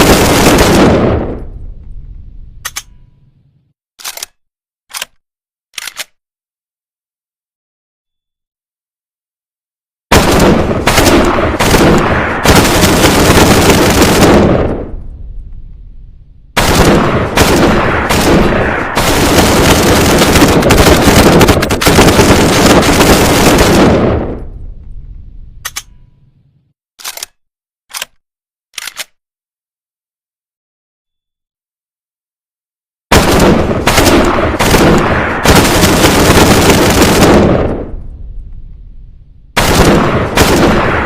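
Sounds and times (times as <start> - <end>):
submachine gun firing full auto: 0.0 - 1.2, 10.1 - 14.6, 16.6 - 24.2, 33.1 - 37.7, 39.6 - 41.0.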